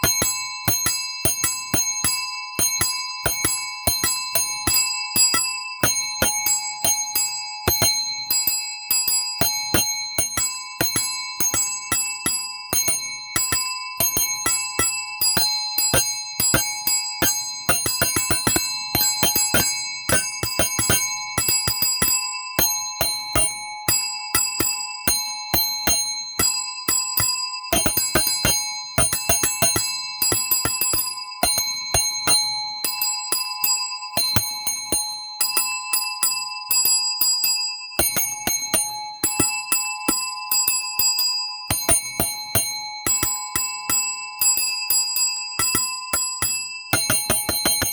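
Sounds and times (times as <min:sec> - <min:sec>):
small metal bell struck rapidly: 0:00.0 - 0:47.9.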